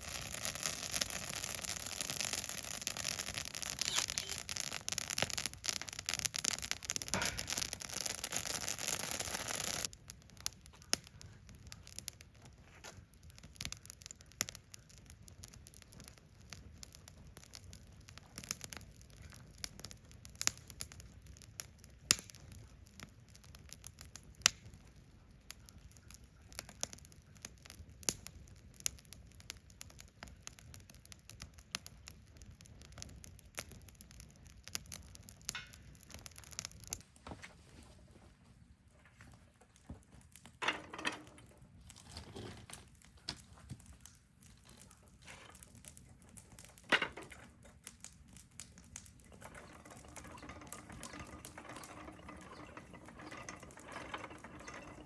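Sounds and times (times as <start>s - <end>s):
sharp fire pops: 0.0s - 37.5s
wood fire crackling: 0.0s - 55.0s.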